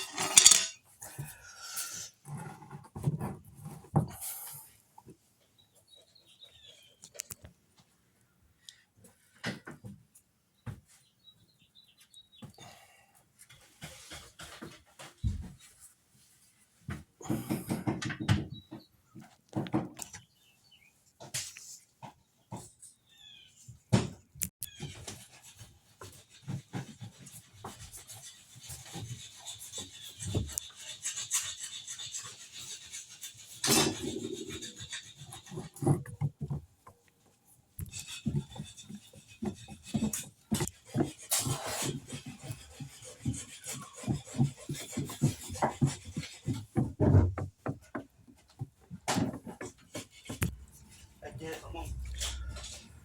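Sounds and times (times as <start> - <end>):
rasping scraping on hard surface: 0.0 - 0.8, 24.8 - 37.0, 37.7 - 53.0.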